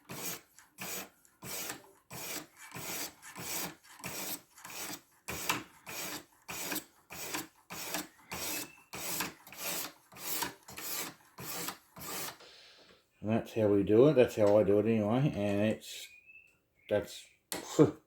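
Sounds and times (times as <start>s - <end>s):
sharpening stone scraping knife blade: 0.1s - 12.4s.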